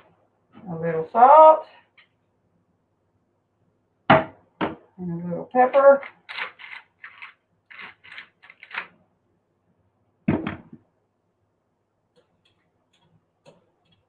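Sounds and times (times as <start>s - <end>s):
pepper grinder rasping: 6.0s - 8.9s.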